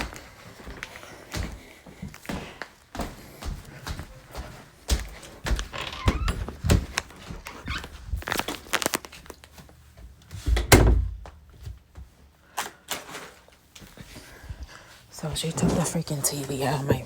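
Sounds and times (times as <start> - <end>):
heavy thud: 10.5 - 11.4.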